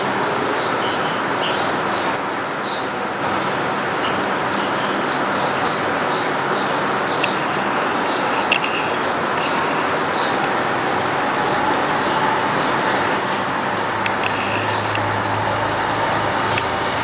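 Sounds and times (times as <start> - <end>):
small birds chirping: 0.0 - 17.0
steady rushing noise: 0.0 - 17.0.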